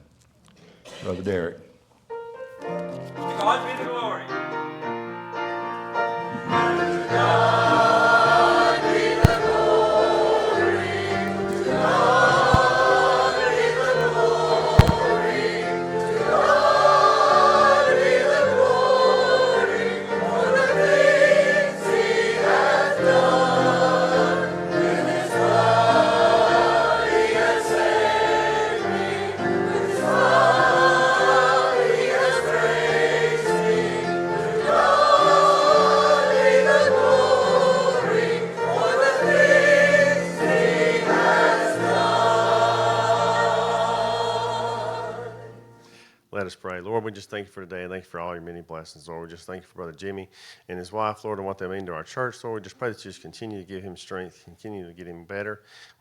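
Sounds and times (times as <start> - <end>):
congregation singing a hymn: 6.0 - 46.0
sharp clicks: 9.2 - 9.8, 12.5 - 14.1, 14.8 - 15.2.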